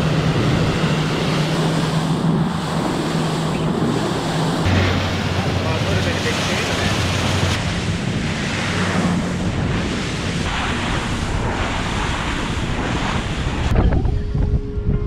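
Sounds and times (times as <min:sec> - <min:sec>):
surges of spray: 0:00.0 - 0:13.7
water rushing past boat hull: 0:00.0 - 0:14.9
low engine hum: 0:00.0 - 0:15.0
wind buffeting microphone: 0:00.0 - 0:15.0.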